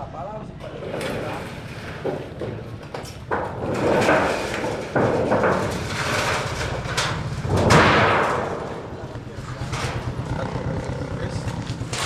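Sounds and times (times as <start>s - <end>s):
sheet metal rattling and scraping: 0.6s - 12.0s
sudden knocks on metal sheet: 1.0s - 9.0s.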